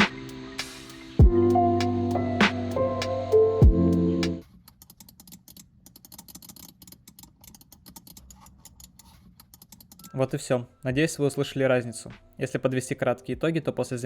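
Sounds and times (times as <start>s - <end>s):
music: 0.0s - 4.4s.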